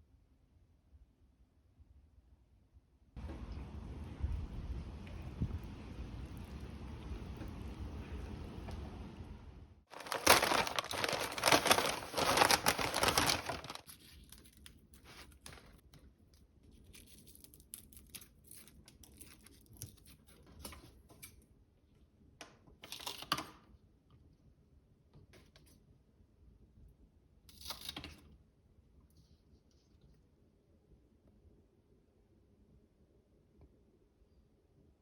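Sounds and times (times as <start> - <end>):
crinkling and tearing: 9.9 - 15.8.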